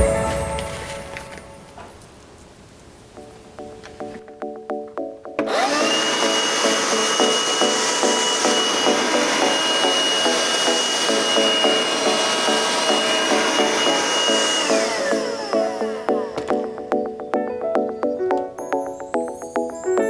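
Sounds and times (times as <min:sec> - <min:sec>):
vacuum cleaner motor running: 0:05.4 - 0:16.7.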